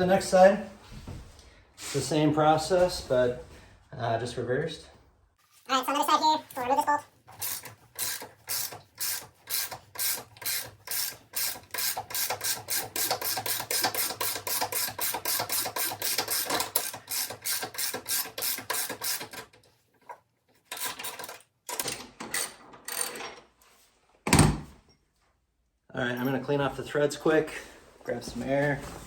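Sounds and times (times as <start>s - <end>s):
ratchet wrench clicking: 7.4s - 19.5s.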